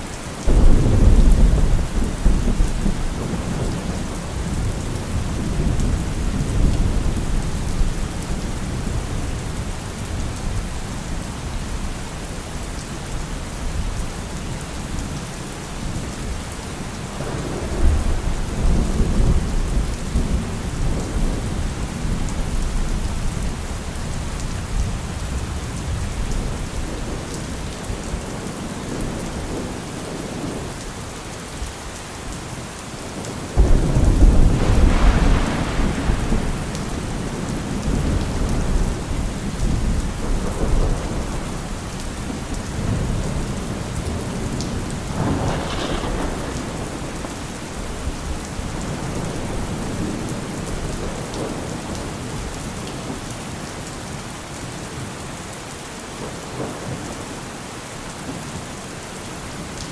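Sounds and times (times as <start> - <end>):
steady rain: 0.0 - 59.9
thunder rumbling: 0.4 - 10.8, 17.2 - 30.6, 33.5 - 52.5.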